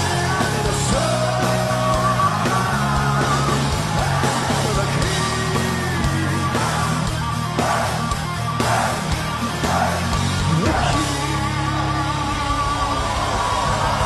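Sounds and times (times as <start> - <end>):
distorted electric guitar lead notes: 0.0 - 14.0
heavy metal band playing live: 0.0 - 14.0.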